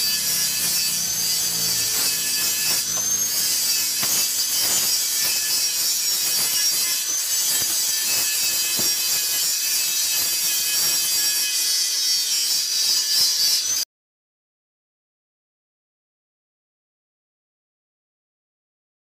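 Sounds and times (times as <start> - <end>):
welding arc crackling and hissing: 0.0 - 13.6.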